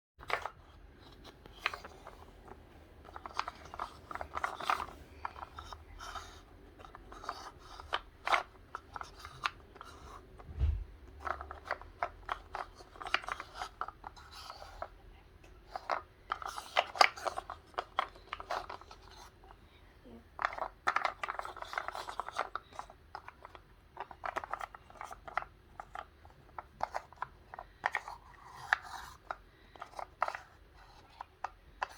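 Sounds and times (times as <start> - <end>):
wooden puzzle pieces clicking: 0.2 - 10.4, 11.1 - 14.9, 15.6 - 19.6, 20.3 - 31.9
low thump: 10.5 - 11.0.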